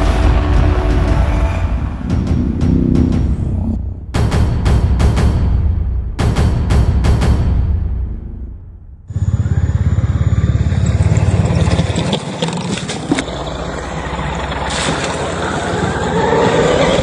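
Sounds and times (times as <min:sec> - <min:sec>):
sharp knocks: 0:04.1 - 0:08.5
rc car pulsing rumble: 0:09.1 - 0:17.0.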